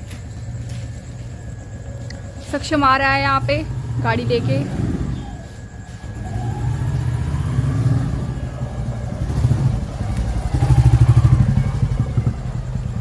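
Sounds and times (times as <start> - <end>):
motorcycle exhaust thumping: 4.8 - 13.0.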